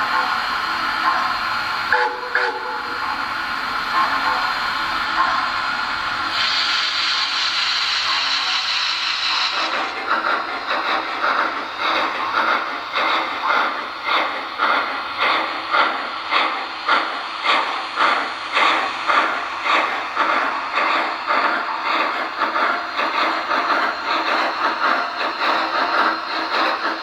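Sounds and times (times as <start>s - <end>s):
model steam locomotive chuffing: 0.0s - 27.0s.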